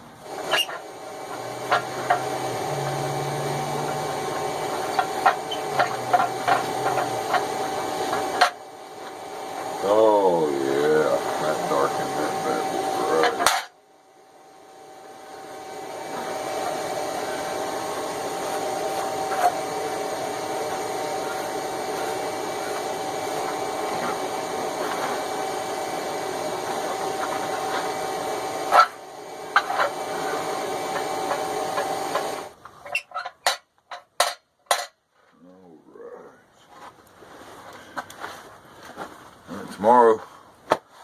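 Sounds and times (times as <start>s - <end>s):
small electric motor humming: 0.2s - 32.6s.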